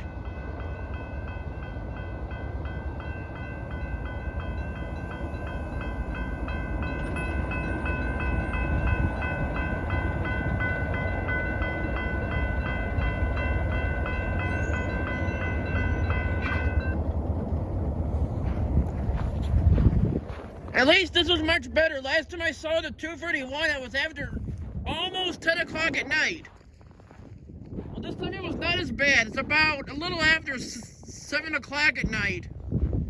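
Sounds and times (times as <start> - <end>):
crossing warning bell ringing: 0.0 - 17.8, 20.8 - 24.3
freight train rumble: 0.0 - 26.8, 27.9 - 33.0.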